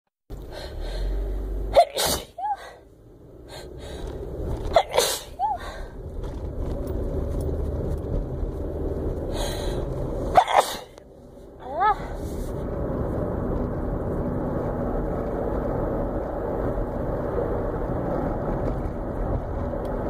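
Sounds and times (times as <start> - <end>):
car cabin rumble: 0.3 - 20.0
woman sneezing: 1.7 - 2.8, 4.7 - 5.6, 10.4 - 10.9.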